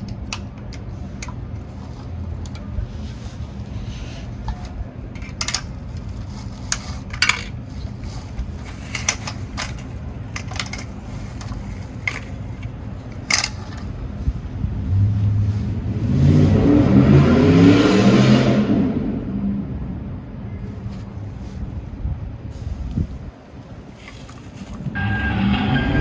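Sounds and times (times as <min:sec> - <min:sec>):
toy trucks clicking and clinking: 0:03.8 - 0:14.0.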